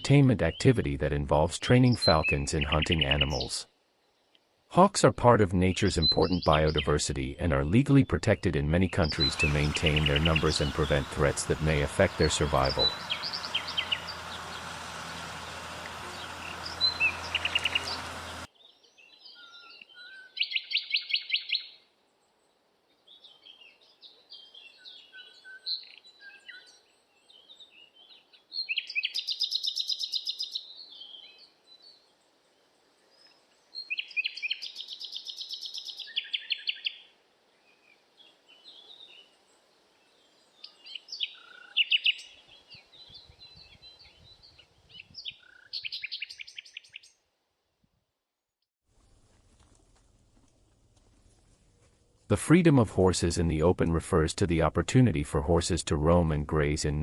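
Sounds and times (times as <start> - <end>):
songbirds trilling and chirping: 1.7 - 4.4, 8.4 - 47.2.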